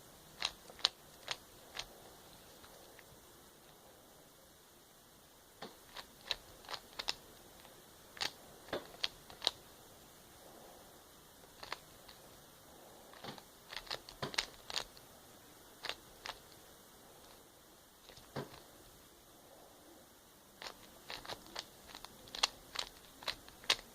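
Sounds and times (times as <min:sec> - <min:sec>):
plastic puzzle cube clicking: 0:00.4 - 0:01.9, 0:05.9 - 0:09.6, 0:11.5 - 0:12.2, 0:13.1 - 0:15.0, 0:15.8 - 0:16.6, 0:20.6 - 0:23.9.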